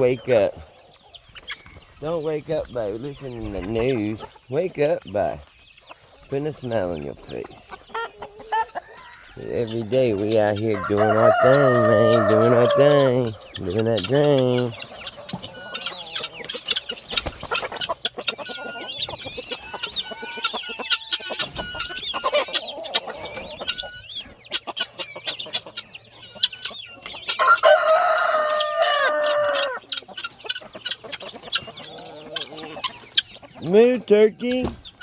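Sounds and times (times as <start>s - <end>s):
chickens clucking and chirping: 0.0s - 35.0s
rooster crowing: 8.6s - 9.7s, 10.7s - 13.5s, 19.5s - 21.8s, 27.3s - 29.8s.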